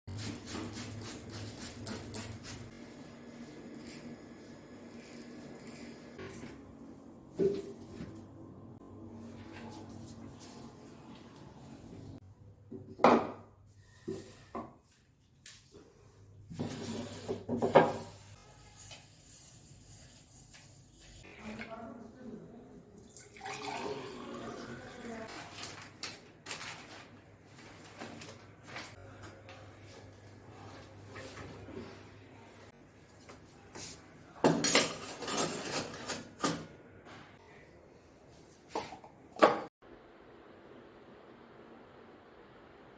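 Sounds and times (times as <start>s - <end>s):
dishes and utensils clattering: 34.4s - 36.7s.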